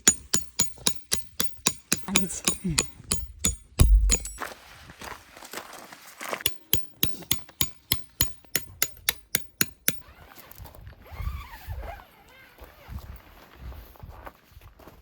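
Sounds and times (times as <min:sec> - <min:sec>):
hammer striking metal tent pegs: 0:00.0 - 0:04.4, 0:06.4 - 0:10.0.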